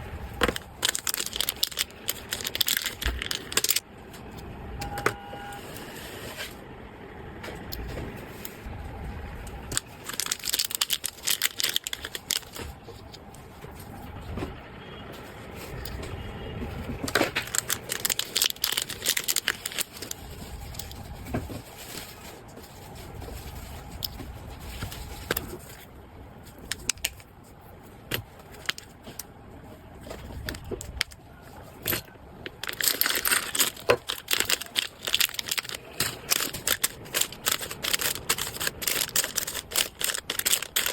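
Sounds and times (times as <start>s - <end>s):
packaging crinkling and tearing: 0.4s - 3.8s, 9.6s - 13.1s, 16.9s - 25.8s, 30.0s - 40.9s.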